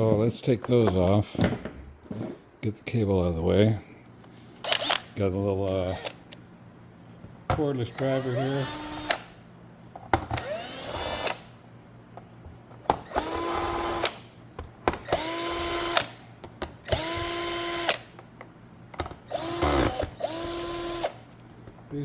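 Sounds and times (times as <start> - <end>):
cordless driver whining: 4.6 - 6.4, 7.9 - 9.4, 10.3 - 11.5, 12.9 - 14.3, 14.9 - 16.2, 16.8 - 18.2, 19.0 - 21.4.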